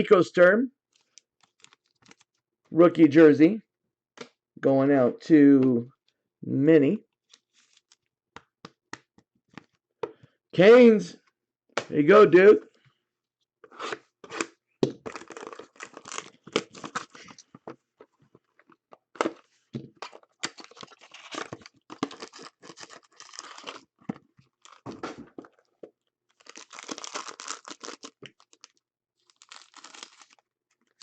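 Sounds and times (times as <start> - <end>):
card pack wrappers crinkling: 0.9 - 2.4, 15.0 - 17.4, 20.0 - 24.0, 24.6 - 25.6, 26.3 - 31.0.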